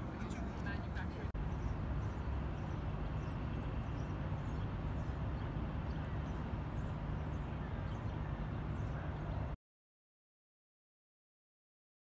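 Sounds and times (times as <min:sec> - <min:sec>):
distant traffic rumble: 0:00.0 - 0:09.6.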